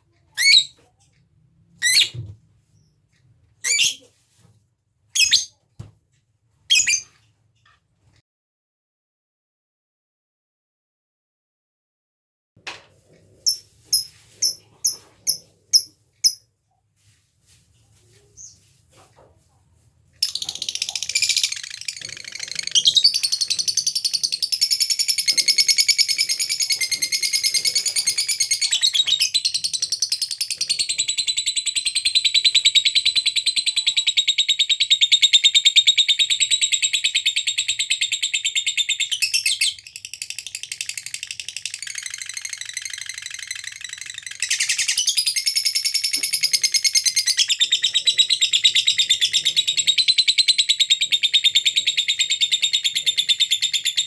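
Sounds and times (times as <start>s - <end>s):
lovebird chattering trill: 0.4s - 0.7s.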